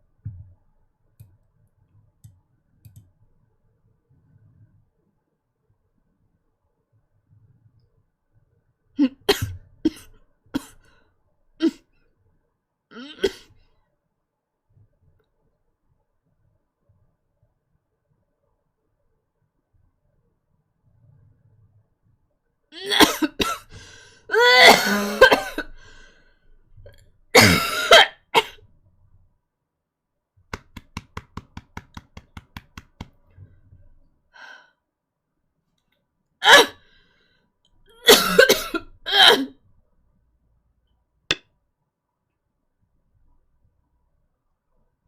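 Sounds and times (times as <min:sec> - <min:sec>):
woman coughing: 0:22.8 - 0:23.7, 0:24.4 - 0:25.8, 0:27.4 - 0:28.6, 0:38.0 - 0:39.5.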